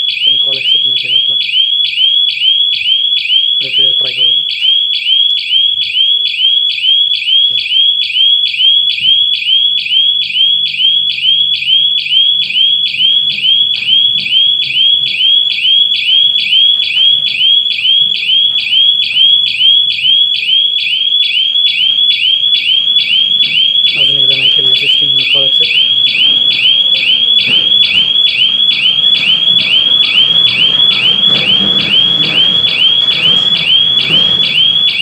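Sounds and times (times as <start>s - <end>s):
burglar alarm siren chirping: 0.0s - 35.0s.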